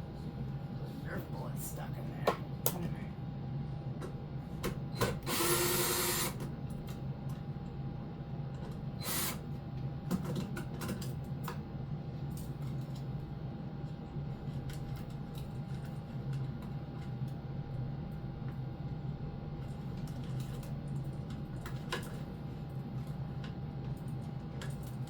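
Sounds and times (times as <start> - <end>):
steady hum: 0.0 - 10.0
power drill running: 5.0 - 6.4, 9.0 - 9.4.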